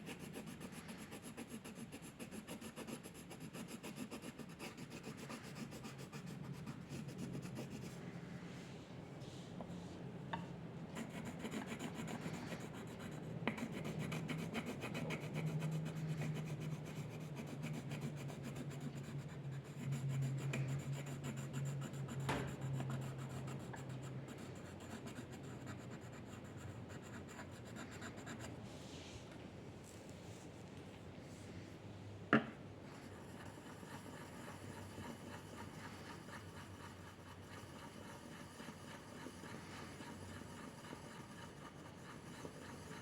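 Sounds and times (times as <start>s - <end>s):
drawing tool scratching paper: 0.0s - 8.0s, 11.0s - 28.5s, 33.0s - 43.0s.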